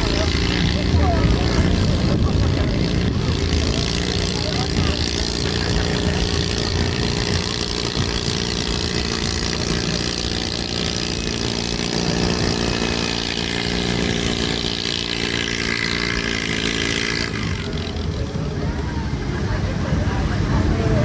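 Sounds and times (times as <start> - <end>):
tractor engine running: 0.0 - 21.0.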